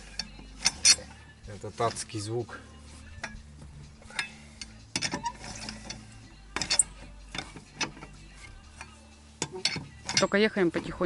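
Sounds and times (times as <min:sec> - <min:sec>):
metallic clinks and rattles: 0:04.0 - 0:11.0.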